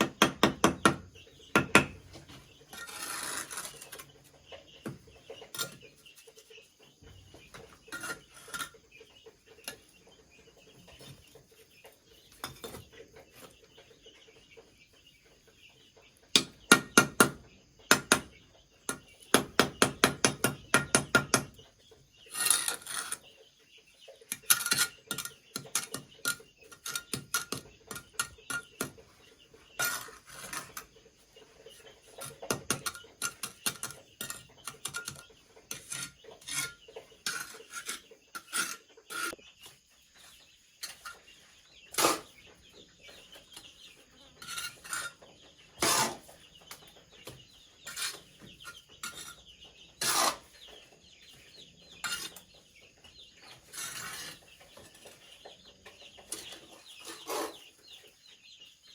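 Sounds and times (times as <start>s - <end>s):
taps and knocks on wood: 0.0s - 2.2s
chickens clucking: 0.8s - 19.3s, 20.4s - 58.9s.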